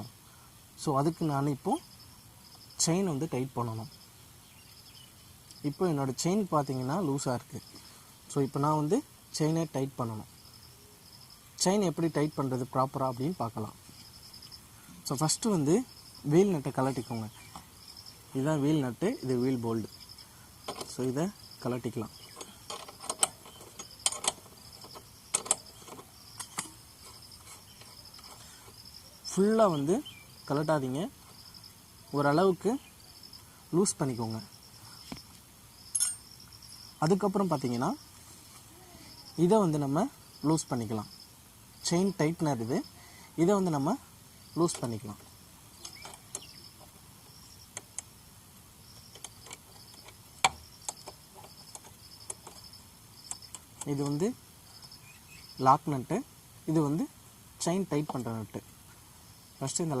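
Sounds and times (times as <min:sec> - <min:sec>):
crickets chirping: 0:00.0 - 1:00.0
spanner clicking on metal nuts: 0:20.7 - 0:28.8, 0:35.9 - 0:36.3, 0:44.6 - 0:47.0, 0:48.9 - 0:54.2.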